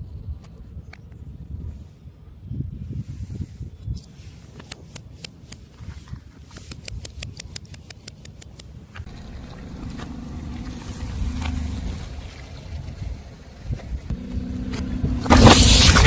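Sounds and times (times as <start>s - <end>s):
car engine and tyres rumbling: 4.1s - 16.0s.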